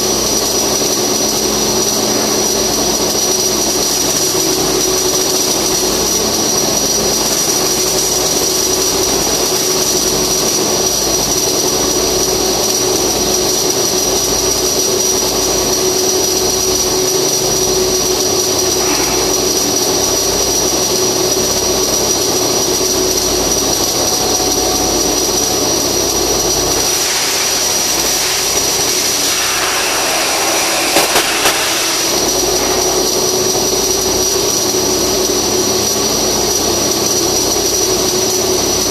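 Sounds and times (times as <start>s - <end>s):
high-pitched whine: 0.0s - 36.3s
welding arc hissing and crackling: 0.0s - 38.9s.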